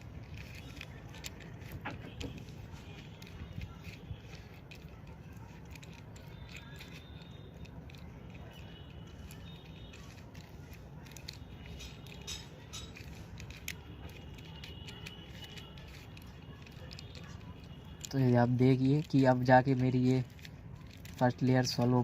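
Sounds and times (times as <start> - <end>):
puzzle cube clicking: 0.0 - 22.0.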